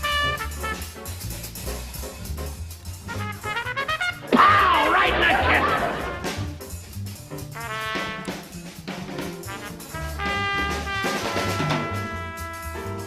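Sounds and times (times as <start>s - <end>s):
muted trumpet: 0.0s - 1.0s, 3.1s - 6.3s, 7.6s - 8.4s, 9.5s - 13.0s
brushed drums: 0.0s - 13.0s.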